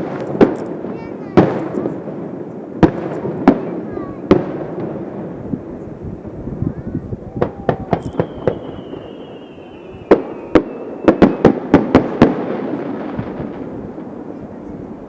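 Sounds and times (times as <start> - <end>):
firework crackle: 0.0 - 15.0
fireworks bangs and bursts: 0.0 - 15.0
firework whistle falling in pitch: 7.1 - 11.7.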